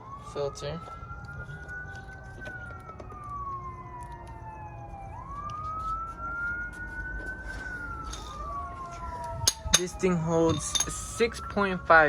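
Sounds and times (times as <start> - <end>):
emergency siren wailing: 0.0 - 12.0.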